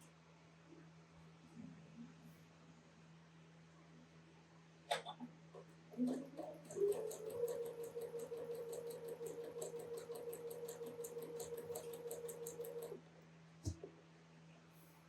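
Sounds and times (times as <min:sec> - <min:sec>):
sewing machine stitching: 0:05.9 - 0:13.0.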